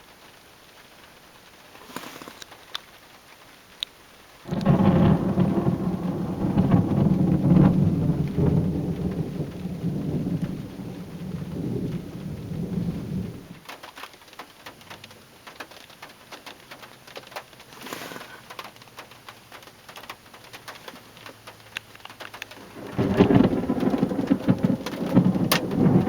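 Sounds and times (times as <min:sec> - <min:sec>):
faint raindrops ticking: 0:00.0 - 0:26.0
thunder rumbling: 0:04.5 - 0:13.6, 0:22.5 - 0:26.0.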